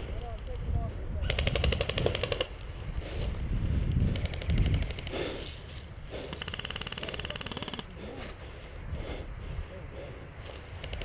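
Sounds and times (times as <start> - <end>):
wind rumble on microphone: 0.0 - 6.2, 8.4 - 11.0
airsoft rifle full-auto bursts: 1.3 - 2.5, 6.3 - 7.9.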